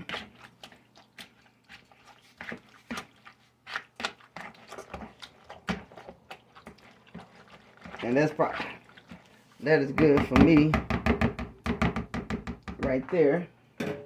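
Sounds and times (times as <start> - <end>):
potato masher squelching fruit: 0.0 - 10.8.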